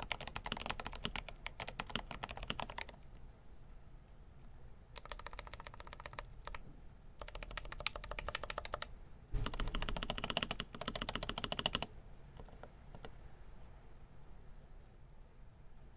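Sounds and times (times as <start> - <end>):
mechanical keyboard keys clacking: 0.0 - 3.0, 5.0 - 6.6, 7.2 - 13.1.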